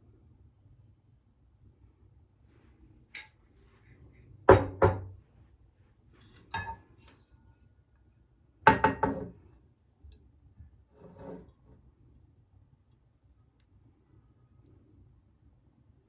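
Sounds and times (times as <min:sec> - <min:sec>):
dishes and glassware clinking: 0:06.2 - 0:07.1.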